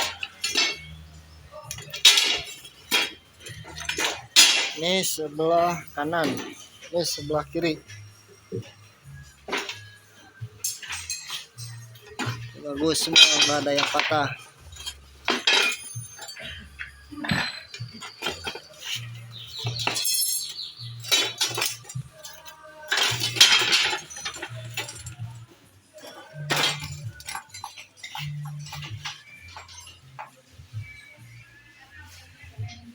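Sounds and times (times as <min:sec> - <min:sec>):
background music with bass line: 0:00.0 - 0:32.9
metallic clinks and knocks: 0:00.0 - 0:32.9.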